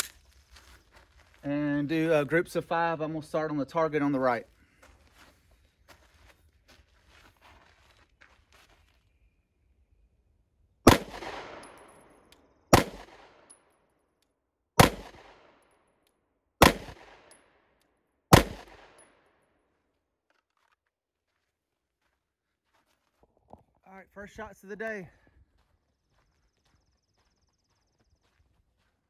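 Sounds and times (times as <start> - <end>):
pistol shots: 10.9 - 11.9, 12.7 - 13.5, 14.8 - 15.6, 16.6 - 17.4, 18.3 - 19.0.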